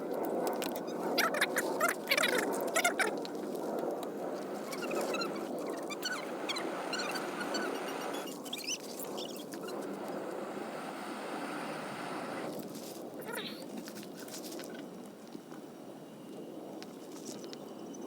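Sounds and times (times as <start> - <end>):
steady rushing noise: 0.0 - 13.2
small birds chirping: 4.4 - 10.4.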